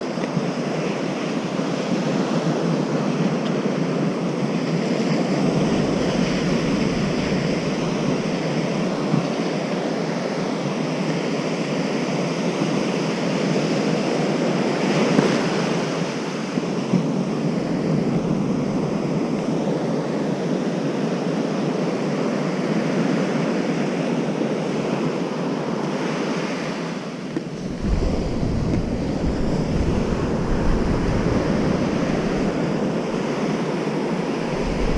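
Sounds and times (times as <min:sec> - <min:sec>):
wind on microphone: 0:00.4 - 0:11.2, 0:13.4 - 0:20.9, 0:26.5 - 0:34.9
low rumble of wind: 0:02.2 - 0:10.5, 0:15.4 - 0:20.7, 0:26.9 - 0:34.9
surf breaking on beach: 0:04.4 - 0:10.1, 0:14.8 - 0:19.8, 0:26.0 - 0:34.9.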